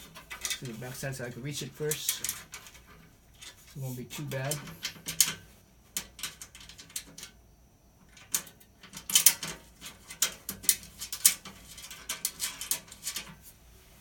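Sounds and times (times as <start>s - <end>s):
hand tools clicking on bolts: 0.0s - 5.4s.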